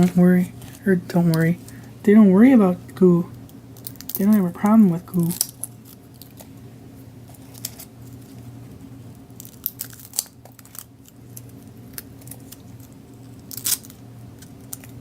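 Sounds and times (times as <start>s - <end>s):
crinkling and rustling: 0.0s - 1.8s, 7.2s - 8.6s
steady low hum: 0.0s - 15.0s.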